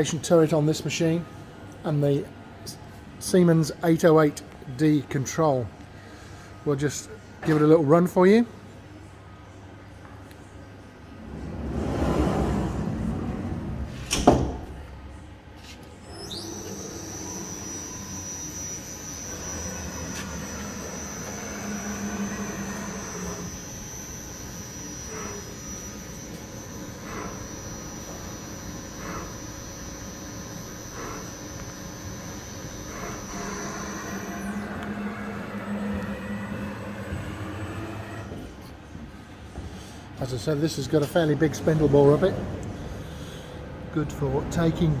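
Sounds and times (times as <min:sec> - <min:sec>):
lathe running with high whine: 0:16.1 - 0:38.4.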